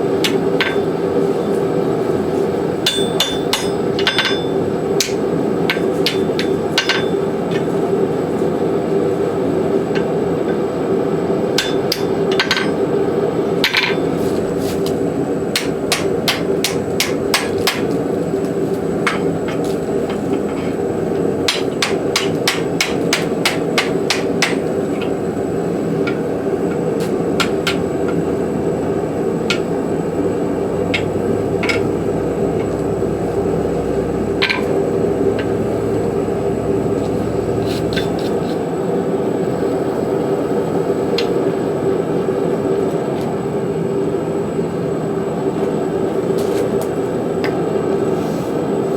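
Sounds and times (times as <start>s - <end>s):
forge running noise: 0.0s - 48.9s
hammer striking hot steel: 0.1s - 1.2s, 2.8s - 7.7s, 11.5s - 13.0s, 13.6s - 14.1s, 15.5s - 25.4s, 26.0s - 28.3s, 29.3s - 30.0s, 30.8s - 32.8s, 34.3s - 38.6s.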